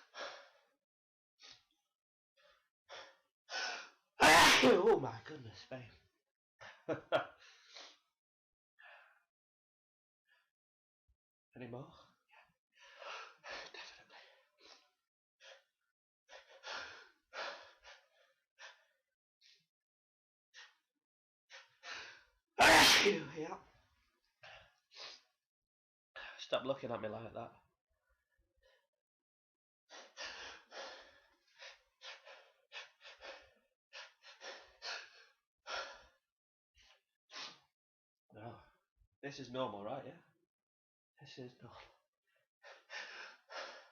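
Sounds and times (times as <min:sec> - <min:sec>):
person gasping before sneezes: 0:04.2 - 0:05.0, 0:22.6 - 0:23.4.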